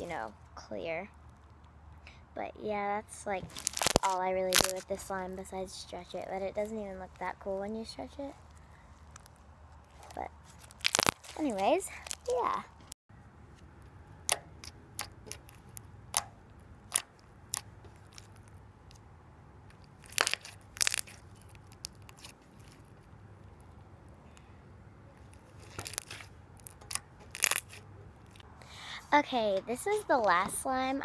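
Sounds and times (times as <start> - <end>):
slime squishing with clicks and pops: 3.5 - 4.8, 10.1 - 11.3, 14.2 - 19.0, 19.7 - 22.4, 25.3 - 28.5.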